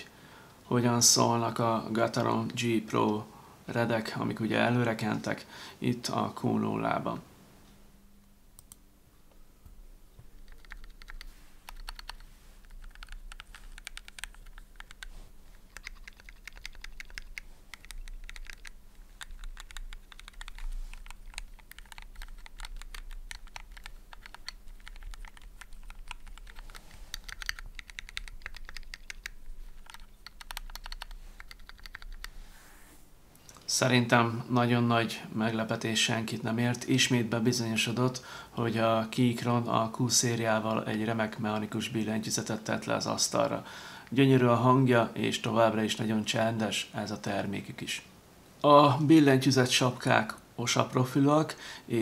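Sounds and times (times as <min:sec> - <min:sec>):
mechanical keyboard keystroke clacks: 0:10.4 - 0:15.1, 0:15.7 - 0:32.3.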